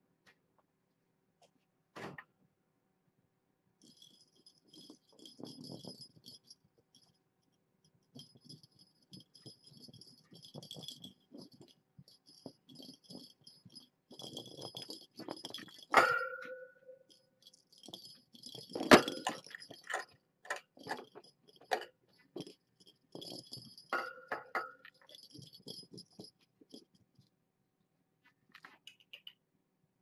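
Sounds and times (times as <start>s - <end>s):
soft rustling and knocking: 3.8s - 16.5s, 17.4s - 27.4s
small jingle bell rattling: 3.8s - 27.3s
sharp metallic clank: 15.9s - 17.0s.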